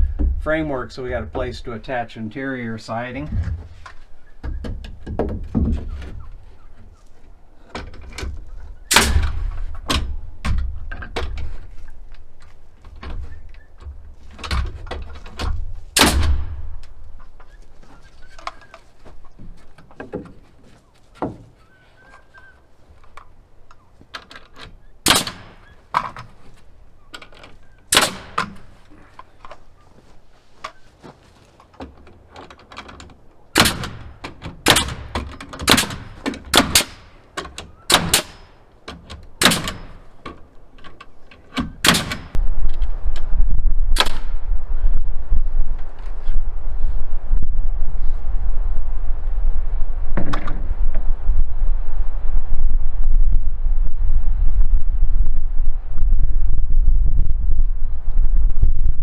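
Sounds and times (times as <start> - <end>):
lumber handling thunks: 0.0 - 2.0, 3.1 - 42.4
nails hammered into wood: 25.1 - 26.1, 27.9 - 28.8, 33.6 - 40.2.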